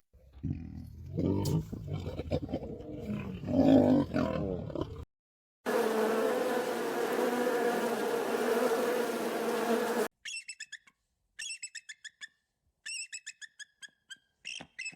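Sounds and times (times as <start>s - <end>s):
hornet buzzing: 5.7s - 10.1s.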